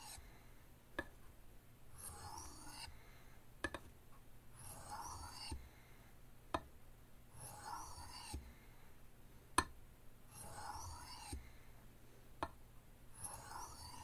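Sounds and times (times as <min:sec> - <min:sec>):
knife scraping on oilstone: 0:00.0 - 0:00.2, 0:02.0 - 0:02.9, 0:04.6 - 0:05.6, 0:07.4 - 0:08.4, 0:10.3 - 0:11.4, 0:13.2 - 0:14.0.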